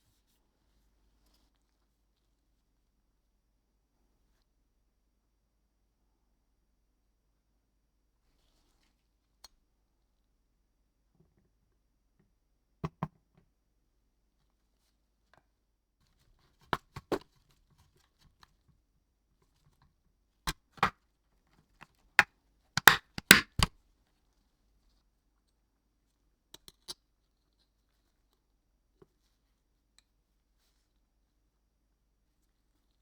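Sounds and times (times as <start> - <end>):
small parts and tools clicking: 22.8 - 23.7.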